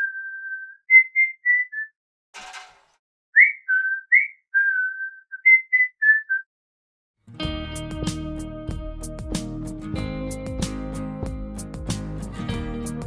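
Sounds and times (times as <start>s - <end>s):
person whistling a tune: 0.0s - 1.9s, 3.4s - 6.5s.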